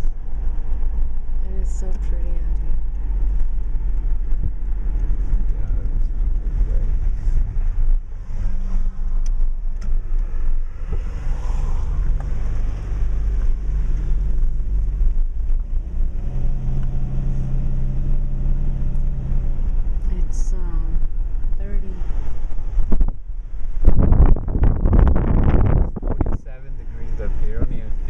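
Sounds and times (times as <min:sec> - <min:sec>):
car engine and road noise: 0:00.0 - 0:28.0.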